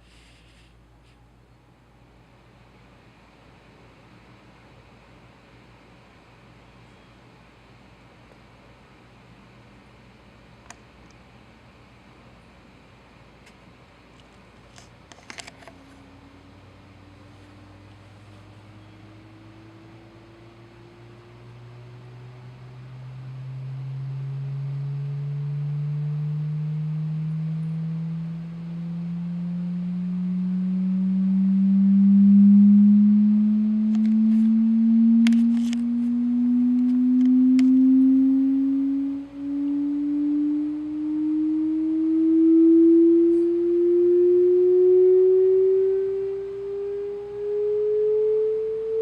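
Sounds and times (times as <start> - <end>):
rising sine tone: 15.4 - 49.0.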